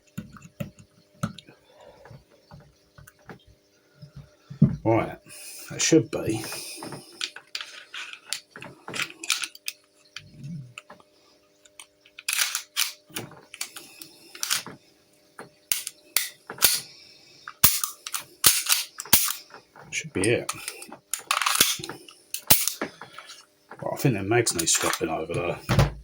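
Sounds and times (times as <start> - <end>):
air pistol parts clicking: 9.0 - 9.8, 11.8 - 14.7, 15.7 - 16.9, 17.5 - 19.6, 20.4 - 23.4.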